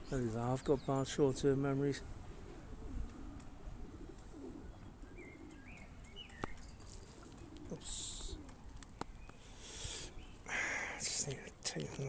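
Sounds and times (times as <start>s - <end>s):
pigeons cooing: 0.0s - 12.0s
small bird chirping: 4.7s - 10.5s.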